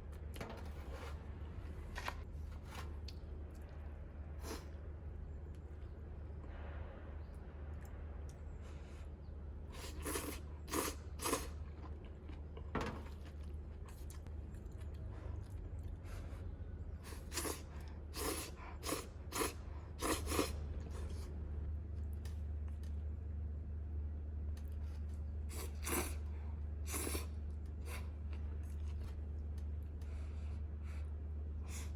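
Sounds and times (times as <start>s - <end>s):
steady low hum: 0.0s - 31.9s
person eating: 9.7s - 12.7s, 17.0s - 21.3s, 25.4s - 29.0s.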